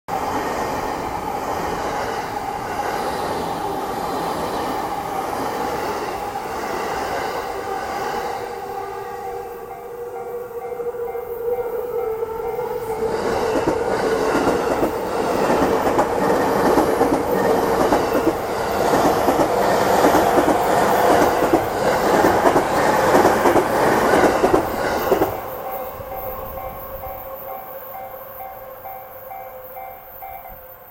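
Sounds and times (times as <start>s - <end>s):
level crossing alarm bell: 9.3s - 13.1s, 25.4s - 30.9s.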